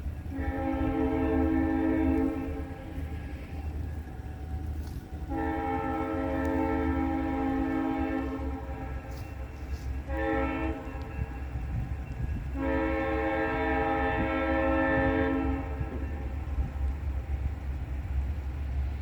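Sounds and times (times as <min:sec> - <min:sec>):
passing train rumble: 0:00.0 - 0:19.0
locomotive air horn chord: 0:00.2 - 0:03.7, 0:04.8 - 0:16.3.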